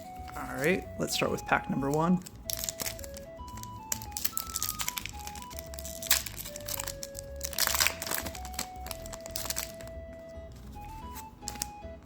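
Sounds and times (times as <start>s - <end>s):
simple background melody: 0.0s - 12.0s
foil wrapper crinkling and tearing: 1.7s - 9.9s.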